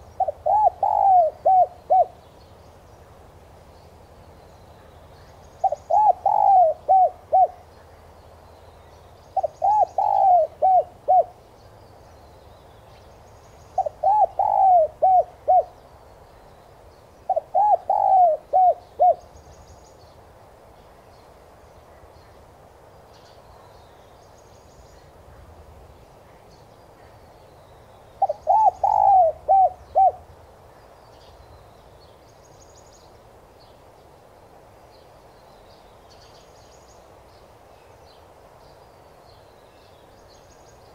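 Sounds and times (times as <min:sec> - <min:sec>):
small birds chirping: 0:00.0 - 0:40.9
dove cooing: 0:00.1 - 0:02.2, 0:05.6 - 0:07.7, 0:09.4 - 0:11.4, 0:13.8 - 0:15.8, 0:17.3 - 0:19.2, 0:28.2 - 0:30.3.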